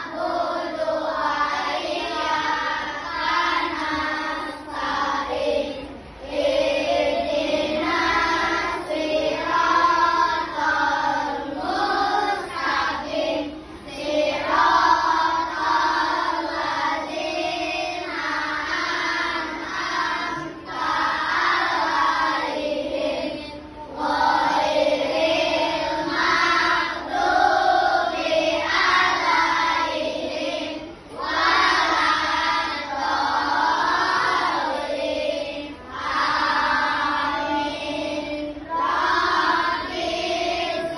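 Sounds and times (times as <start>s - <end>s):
children singing together: 0.0s - 40.9s.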